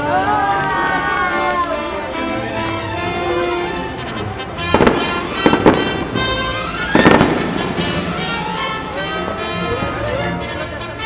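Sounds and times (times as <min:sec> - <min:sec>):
music playing: 0:00.0 - 0:11.0
fireworks exploding: 0:04.6 - 0:08.6.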